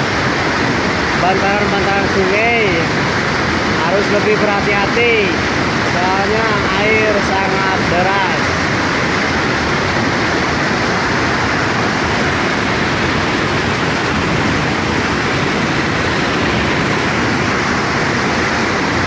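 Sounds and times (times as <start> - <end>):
river rushing: 0.0 - 19.0.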